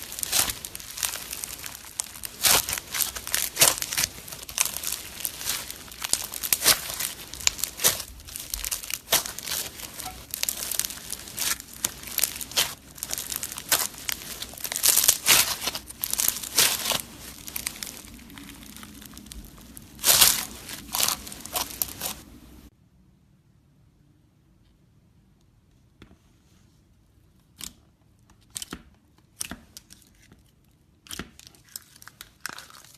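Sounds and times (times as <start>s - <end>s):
slime crackling and popping: 0.0s - 22.7s, 31.1s - 32.9s.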